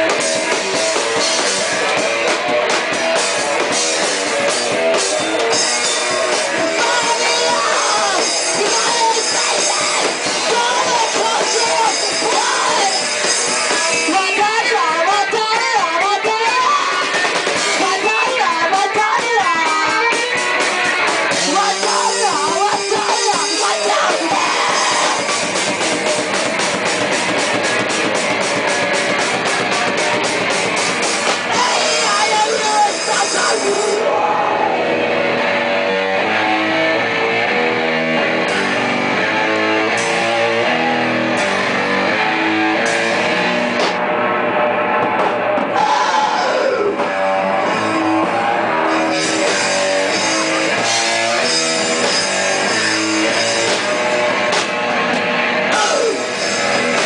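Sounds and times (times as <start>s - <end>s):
drums: 0.0s - 57.0s
electric guitar: 0.0s - 57.0s
person singing: 6.4s - 20.3s, 21.4s - 25.3s, 31.5s - 35.0s, 45.8s - 47.1s, 55.7s - 56.4s.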